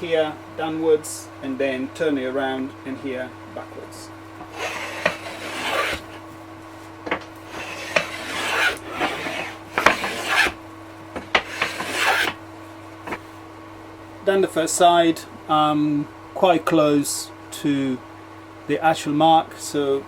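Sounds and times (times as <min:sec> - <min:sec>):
hand plane cutting wood: 0:04.5 - 0:06.2, 0:07.4 - 0:10.6, 0:11.4 - 0:12.4.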